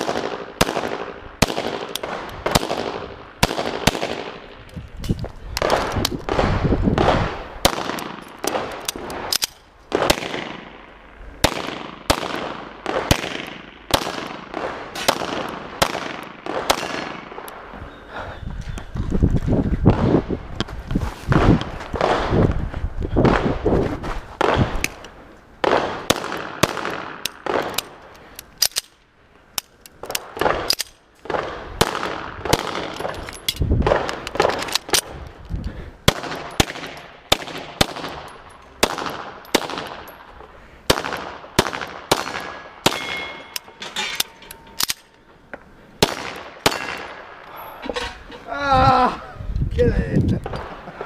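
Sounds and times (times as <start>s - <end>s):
gunshots: 0.0s - 4.5s, 5.6s - 10.8s, 11.4s - 17.5s, 25.6s - 27.8s, 30.2s - 33.2s, 36.0s - 40.1s, 40.9s - 43.5s, 46.0s - 47.4s
metallic rings: 43.0s - 45.2s, 47.6s - 48.5s.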